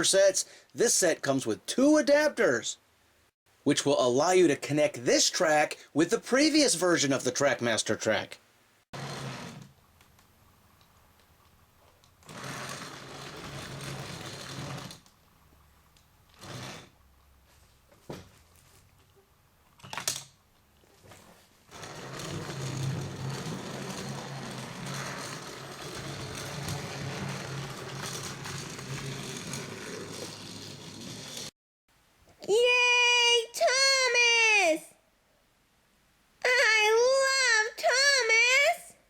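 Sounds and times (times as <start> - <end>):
toy train whirring on track: 21.8 - 31.5.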